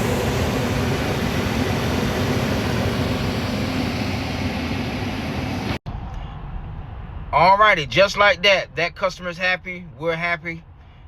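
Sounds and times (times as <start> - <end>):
furnace burner and blower rushing: 0.0 - 5.8.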